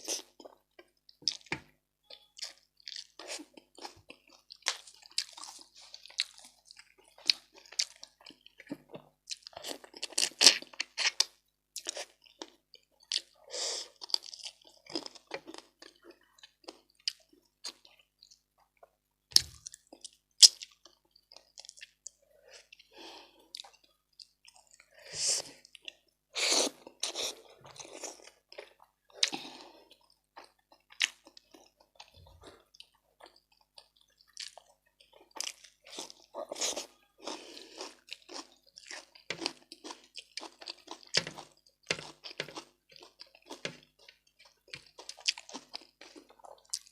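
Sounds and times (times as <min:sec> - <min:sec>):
person chewing and crunching: 0:00.0 - 0:46.9.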